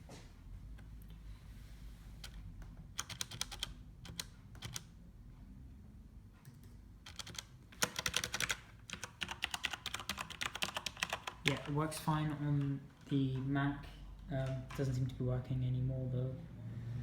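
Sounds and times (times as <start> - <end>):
typing on mechanical keyboard: 2.2 - 2.4, 3.0 - 4.9, 6.5 - 11.8.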